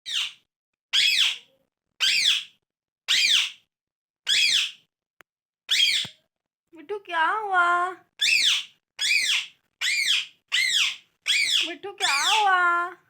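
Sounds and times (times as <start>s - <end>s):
parrot screeching: 0.1s - 0.4s, 1.0s - 3.6s, 4.3s - 4.8s, 5.7s - 6.1s, 8.2s - 12.6s
person speaking: 6.8s - 8.0s, 11.6s - 13.0s.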